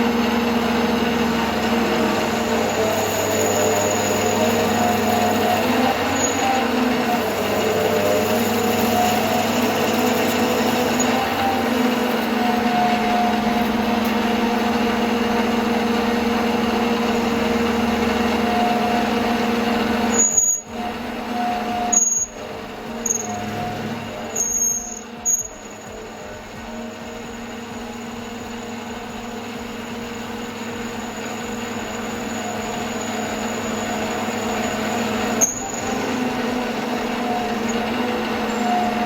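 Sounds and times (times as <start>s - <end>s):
lathe motor whine: 0.0s - 39.0s
brief high squeaks: 20.1s - 20.7s, 21.8s - 22.4s, 23.0s - 25.8s, 35.4s - 36.0s.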